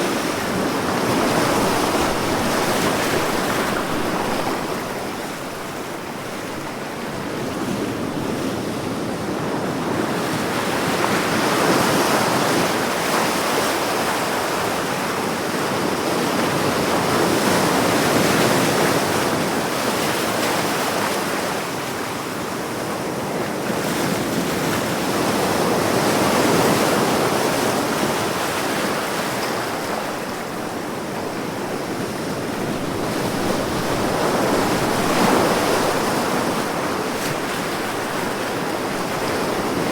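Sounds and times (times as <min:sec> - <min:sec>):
sea waves washing onto shore: 0:00.0 - 0:13.0, 0:24.7 - 0:39.9.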